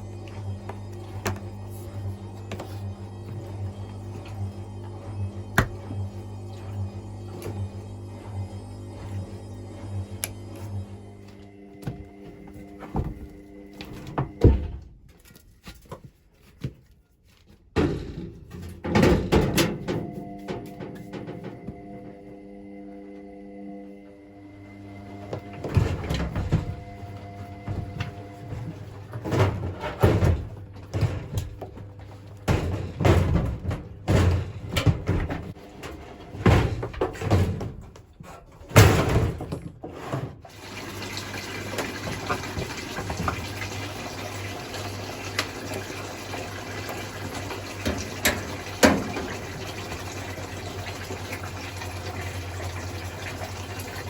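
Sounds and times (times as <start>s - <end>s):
low machine hum: 0.0s - 14.9s, 17.8s - 54.0s
knocks and splashes in washing machine: 5.4s - 6.7s, 11.9s - 15.0s, 17.8s - 22.2s, 25.0s - 54.0s
water rushing into washing machine: 23.9s - 38.1s, 38.7s - 54.0s.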